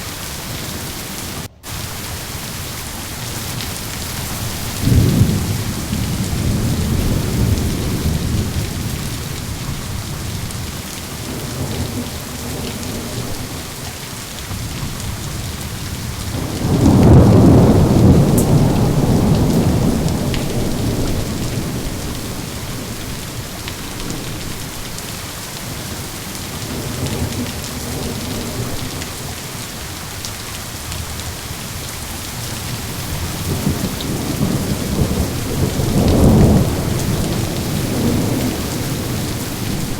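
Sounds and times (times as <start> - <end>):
heavy rain: 0.0 - 39.9
rolling thunder: 3.3 - 13.8, 14.5 - 25.0, 32.4 - 39.9.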